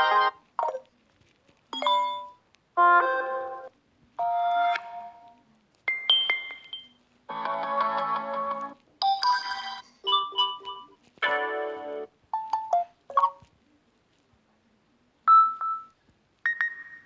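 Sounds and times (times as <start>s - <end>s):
phone melodic chimes: 9.1s - 10.9s.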